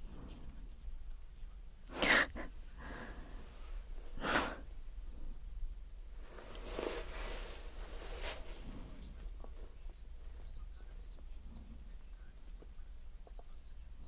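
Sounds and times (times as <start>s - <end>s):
soft long breath: 1.9s - 5.4s.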